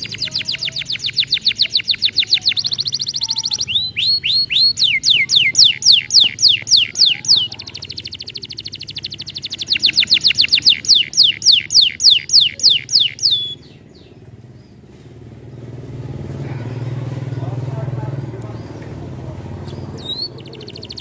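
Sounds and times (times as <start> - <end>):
buzzing trill: 0.0 - 13.6
canary singing: 0.0 - 14.8, 18.4 - 21.0.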